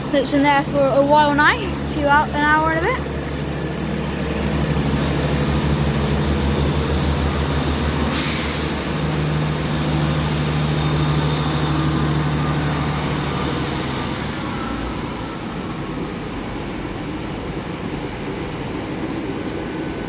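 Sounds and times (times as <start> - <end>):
train diesel engines running: 0.0 - 20.0
air hiss: 8.1 - 8.9.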